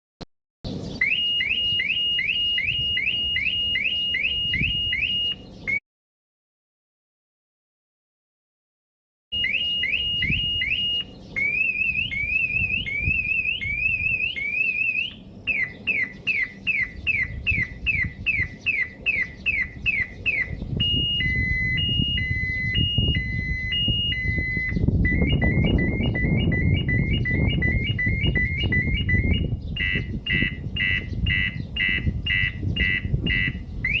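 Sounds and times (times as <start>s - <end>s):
car alarm siren: 1.0s - 5.8s, 9.3s - 34.0s.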